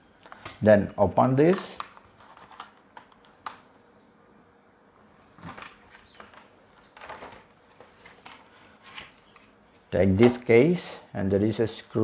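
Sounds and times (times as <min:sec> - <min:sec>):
package rustling: 0:01.4 - 0:03.6.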